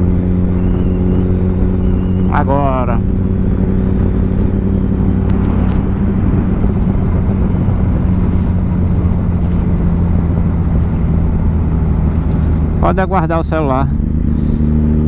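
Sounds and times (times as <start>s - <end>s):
wind and road noise: 3.2s - 15.0s
motorcycle engine drone: 5.0s - 15.0s
faint clicks: 5.3s - 12.9s.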